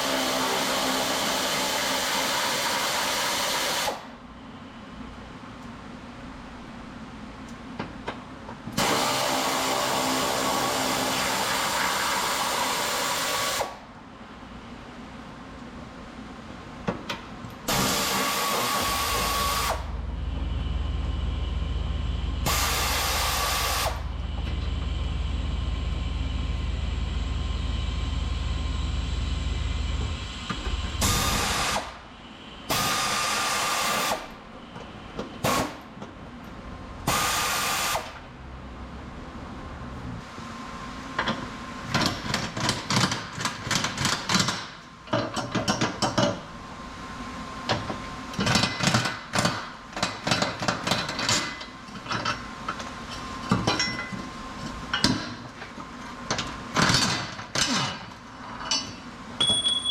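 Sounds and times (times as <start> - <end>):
low hum: 19.8 - 32.7.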